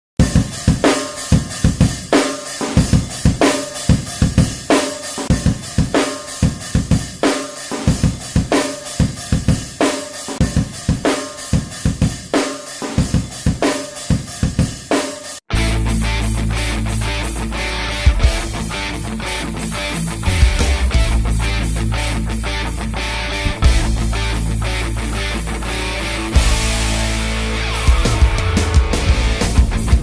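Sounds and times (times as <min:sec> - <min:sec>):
drum kit steady beat: 0:00.2 - 0:15.5, 0:18.0 - 0:18.8, 0:20.3 - 0:21.5, 0:23.6 - 0:24.3, 0:26.3 - 0:30.0.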